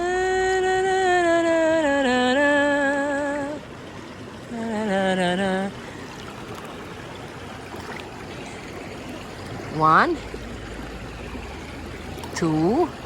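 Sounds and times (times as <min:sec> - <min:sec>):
woman humming: 0:00.0 - 0:03.6, 0:04.5 - 0:05.8
stream running: 0:00.0 - 0:13.0.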